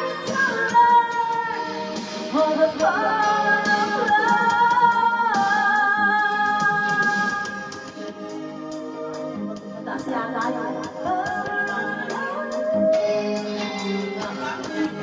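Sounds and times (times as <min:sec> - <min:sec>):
music: 0:00.0 - 0:15.0.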